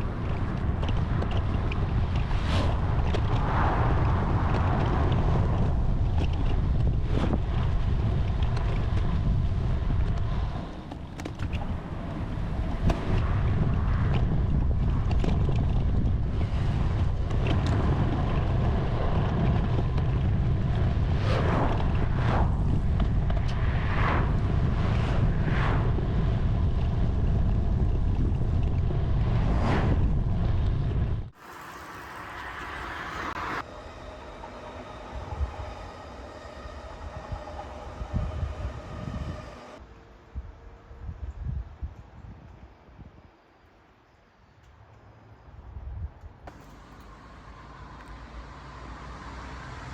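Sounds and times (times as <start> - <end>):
wind buffeting microphone: 0.0 - 39.8
short higher sounds: 31.4 - 39.8.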